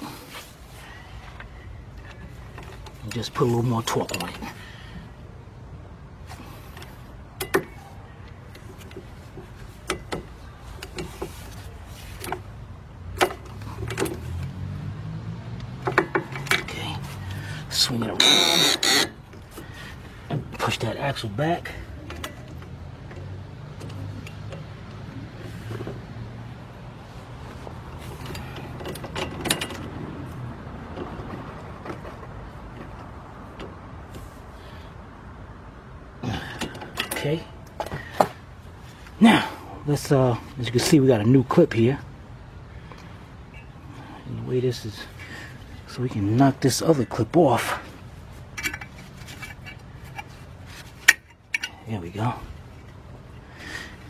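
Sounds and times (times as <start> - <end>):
metal tools clinking: 48.5 - 53.0.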